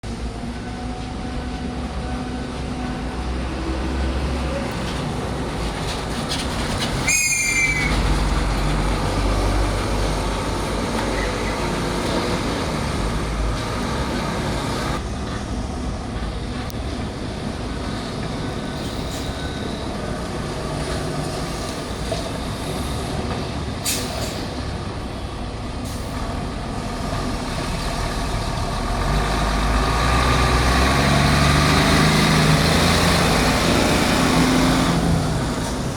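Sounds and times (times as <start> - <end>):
truck diesel engine rumble: 0.0 - 35.9
high squeal: 6.8 - 8.4.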